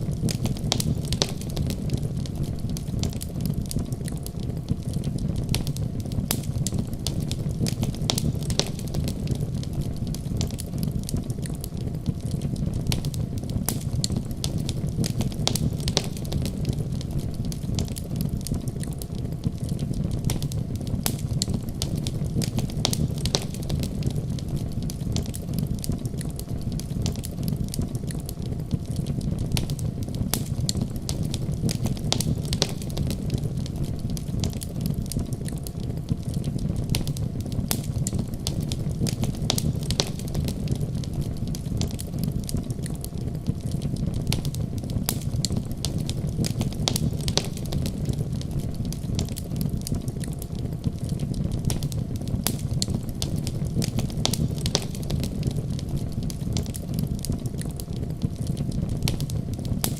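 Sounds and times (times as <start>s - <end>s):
low fire rumble: 0.0s - 59.9s
wood fire crackling: 0.0s - 59.9s.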